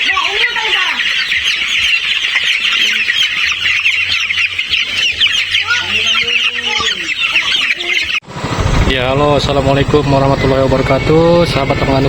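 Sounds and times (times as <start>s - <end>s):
longer lower chicken calls: 0.0s - 8.2s
chicks peeping: 0.0s - 8.3s, 9.0s - 12.0s.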